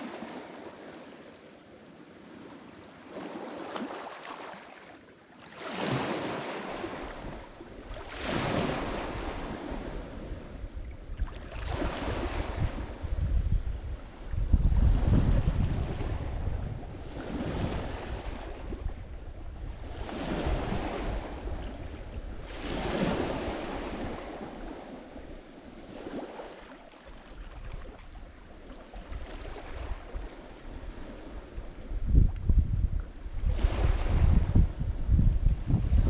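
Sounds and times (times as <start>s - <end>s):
waves washing onto shore: 0.0s - 36.0s
wind buffeting microphone: 6.9s - 26.4s, 29.0s - 36.0s.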